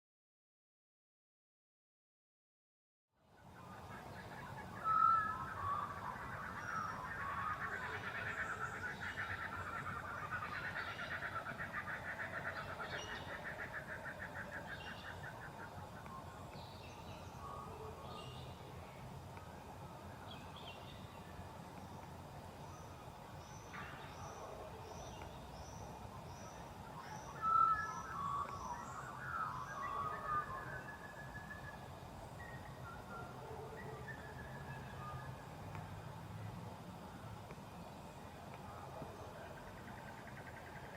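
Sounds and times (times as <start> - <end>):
bird warbling song: 3.5 - 35.4.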